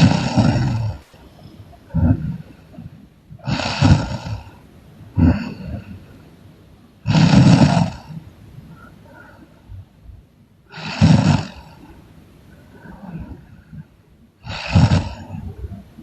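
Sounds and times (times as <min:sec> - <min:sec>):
woman snoring loudly: 0:00.0 - 0:02.4, 0:03.4 - 0:04.5, 0:07.1 - 0:08.0, 0:10.7 - 0:11.7, 0:14.4 - 0:15.3
quiet breathing: 0:00.0 - 0:16.0.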